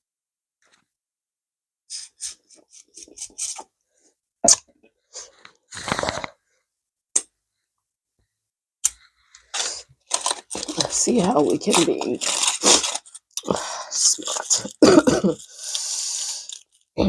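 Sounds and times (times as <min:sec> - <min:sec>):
breathy slurp: 0:05.2 - 0:06.4, 0:12.6 - 0:16.6.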